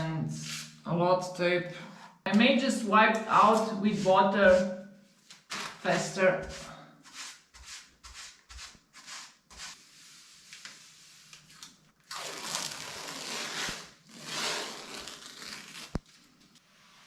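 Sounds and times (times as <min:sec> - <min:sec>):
wiping wall tiles: 0:03.3 - 0:11.7.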